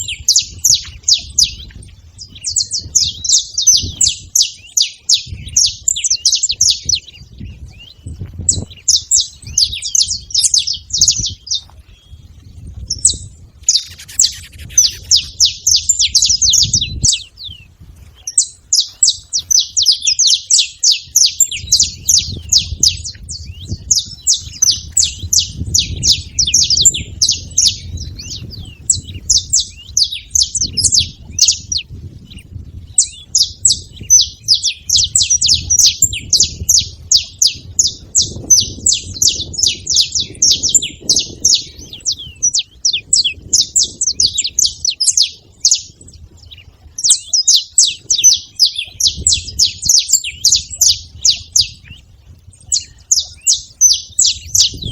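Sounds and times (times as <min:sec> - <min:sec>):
finch singing: 0:00.0 - 0:54.9.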